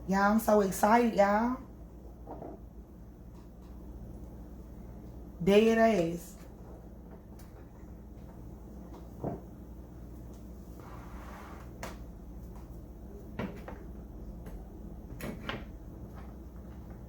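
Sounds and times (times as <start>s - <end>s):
hard objects knocking and clunking: 2.2s - 2.7s, 13.4s - 17.0s.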